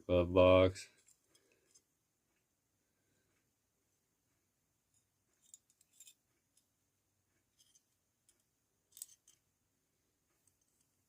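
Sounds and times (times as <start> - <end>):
metal multi-tool clicks and scrapes: 8.9 - 9.4.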